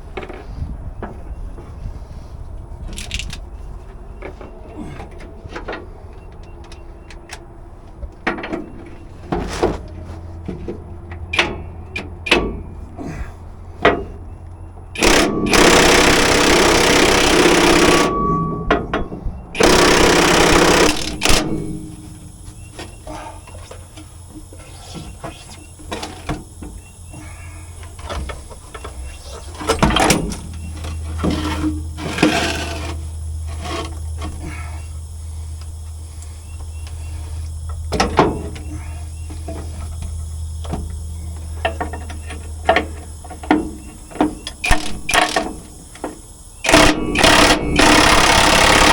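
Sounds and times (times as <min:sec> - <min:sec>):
tools and metal parts clanking: 0:02.8 - 0:12.9, 0:15.0 - 0:34.6, 0:40.9 - 0:48.9
impact wrench running: 0:15.0 - 0:18.2, 0:19.6 - 0:22.3, 0:31.2 - 0:34.3, 0:44.6 - 0:45.7, 0:46.6 - 0:48.9.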